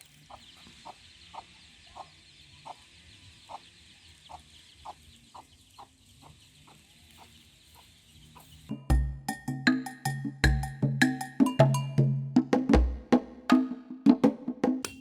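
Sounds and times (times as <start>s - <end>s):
chicken clucking: 0.2s - 8.7s.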